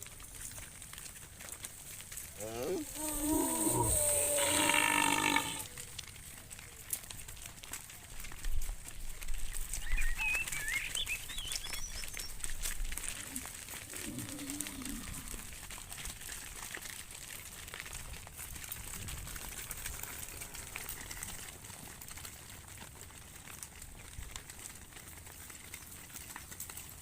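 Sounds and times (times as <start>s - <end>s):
low animal call: 2.3s - 6.0s, 13.0s - 15.6s
steady hiss: 2.4s - 5.7s
clicks and rustling: 5.7s - 27.0s.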